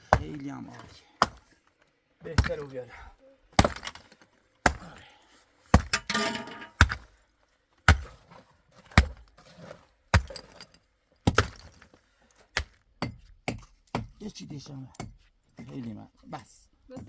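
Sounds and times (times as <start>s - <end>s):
tool chipping concrete: 1.2s - 1.4s, 2.3s - 2.7s, 3.6s - 4.9s, 5.7s - 7.1s, 7.9s - 10.7s, 11.3s - 11.9s.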